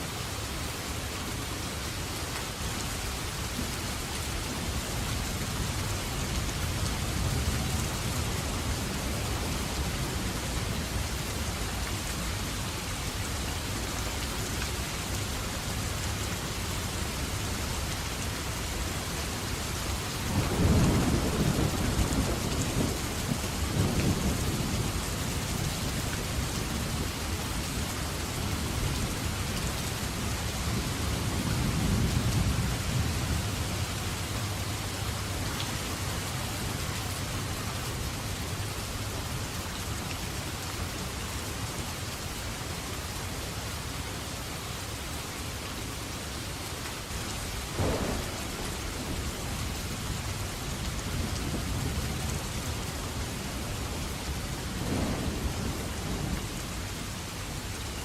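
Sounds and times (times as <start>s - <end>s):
steady rain falling: 0.0s - 58.0s
thunder rumbling: 20.2s - 27.3s, 47.7s - 57.3s.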